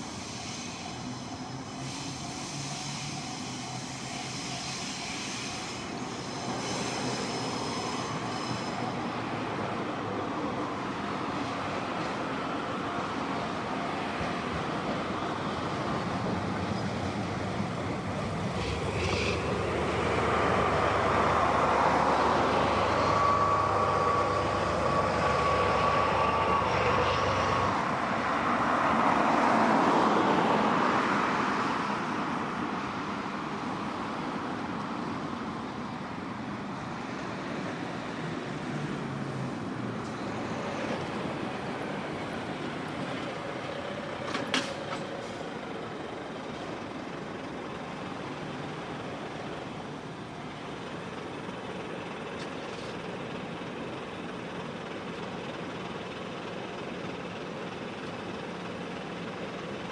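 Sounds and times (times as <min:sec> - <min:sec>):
thin steady whine: 0:00.0 - 0:28.7
low engine hum: 0:09.4 - 0:30.6
vehicle rushing past: 0:18.3 - 0:31.9.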